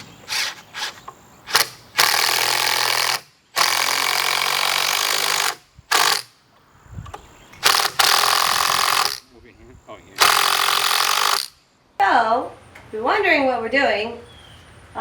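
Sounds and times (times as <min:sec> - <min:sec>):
power drill running: 0:01.5 - 0:06.3, 0:07.6 - 0:09.2, 0:10.2 - 0:11.6.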